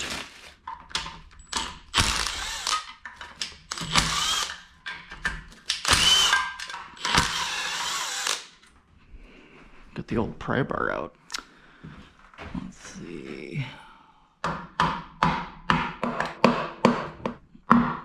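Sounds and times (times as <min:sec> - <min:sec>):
tools and bolts clicking: 0:00.8 - 0:08.7
impact tool spinning bolts: 0:01.4 - 0:04.6, 0:05.7 - 0:08.5.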